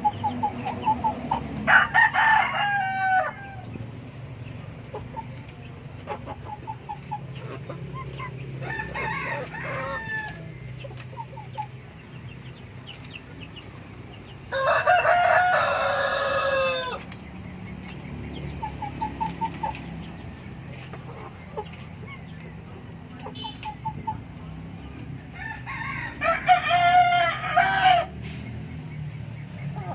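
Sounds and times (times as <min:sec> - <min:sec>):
chickens clucking softly: 0:00.0 - 0:29.9
rooster crowing: 0:01.6 - 0:03.6, 0:08.6 - 0:10.5, 0:14.5 - 0:17.0, 0:25.4 - 0:28.2.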